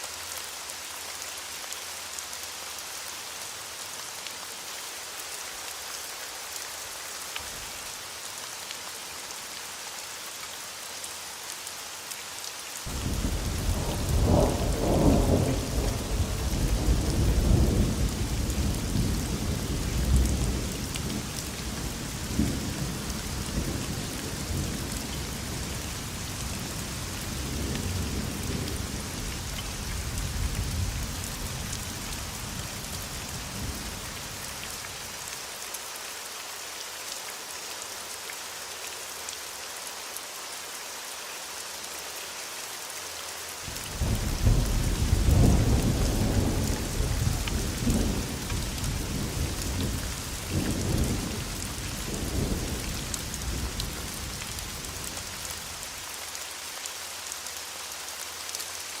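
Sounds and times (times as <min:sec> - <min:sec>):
steady rain: 0:00.0 - 0:59.0
rolling thunder: 0:12.9 - 0:20.6, 0:44.0 - 0:52.8.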